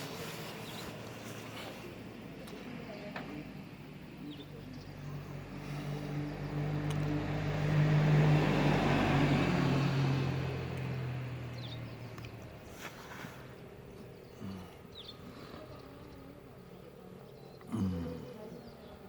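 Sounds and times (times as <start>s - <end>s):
vehicle driving past: 4.9s - 14.1s.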